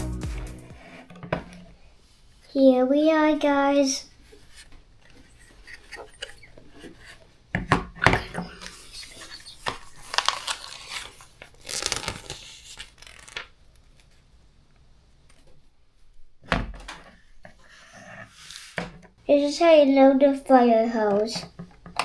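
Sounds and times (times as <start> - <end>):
plastic toy pieces rustling and clicking: 8.5 - 13.5.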